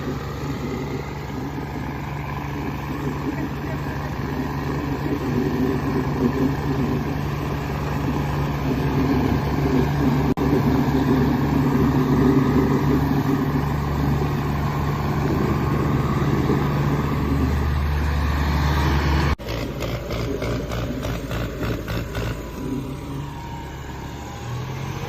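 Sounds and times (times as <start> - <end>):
tractor diesel engine running: 0.0 - 25.0.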